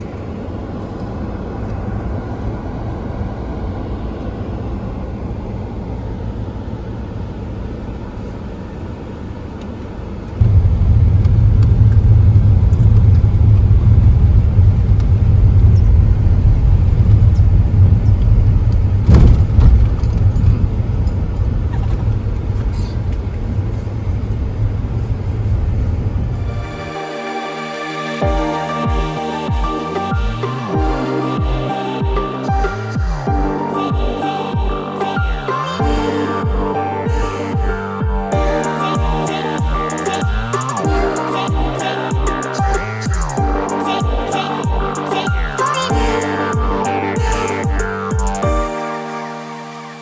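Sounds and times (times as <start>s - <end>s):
low rumble of car driving: 0.0s - 26.9s.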